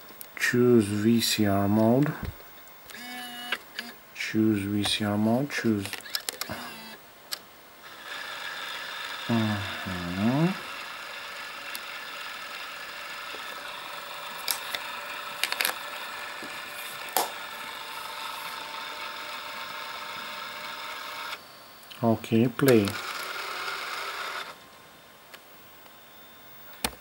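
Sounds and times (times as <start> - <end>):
camcorder tape mechanism whirring: 2.9 - 4.0, 5.8 - 21.4, 22.7 - 24.6
short hummed voice: 9.3 - 10.7.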